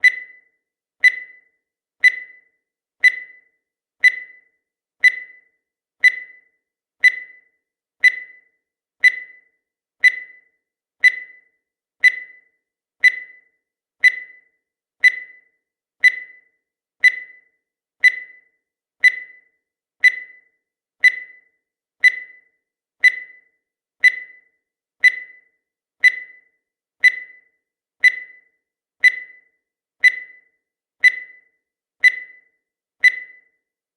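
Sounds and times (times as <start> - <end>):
short high timer beeps: 0.0 - 14.4, 15.0 - 33.5.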